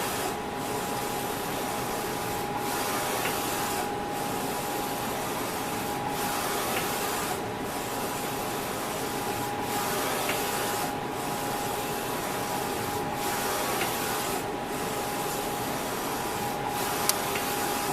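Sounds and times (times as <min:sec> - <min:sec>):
printer hissing and whining: 0:00.0 - 0:17.9.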